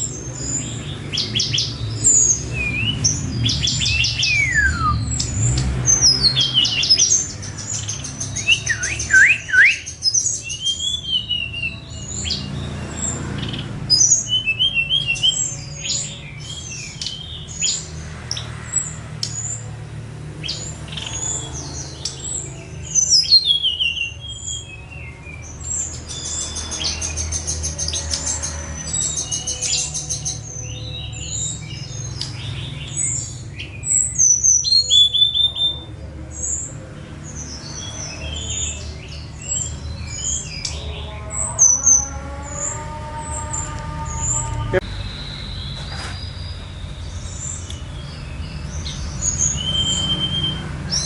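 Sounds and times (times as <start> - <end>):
songbirds singing: 0.0 - 51.0.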